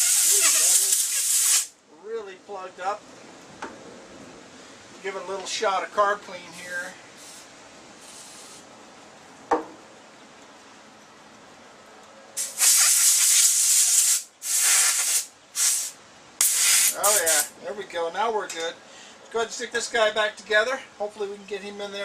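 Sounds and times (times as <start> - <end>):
hissing spray bursts: 0.0 - 1.8, 7.2 - 8.7, 12.4 - 17.5.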